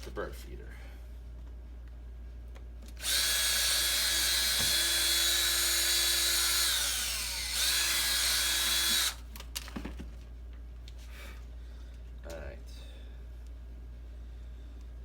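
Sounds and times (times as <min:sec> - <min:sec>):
electric drill running: 0:03.0 - 0:09.2.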